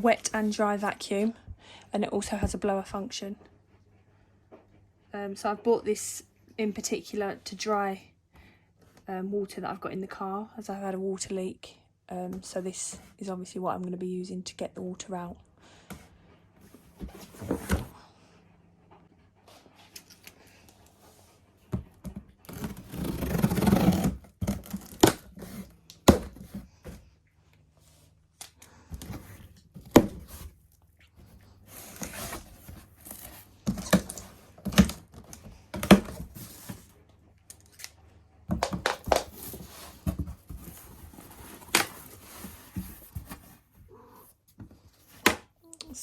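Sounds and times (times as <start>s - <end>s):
cardboard tearing and rustling: 22.4s - 26.6s, 31.6s - 36.8s.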